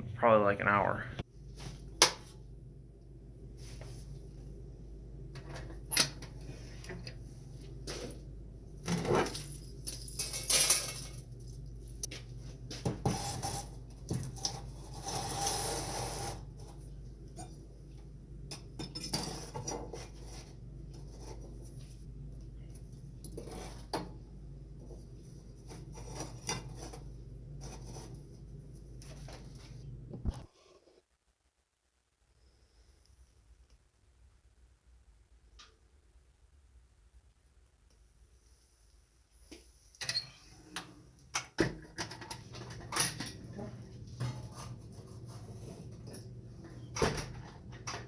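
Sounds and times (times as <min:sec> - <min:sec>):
small metal objects clinking: 0:09.3 - 0:11.7.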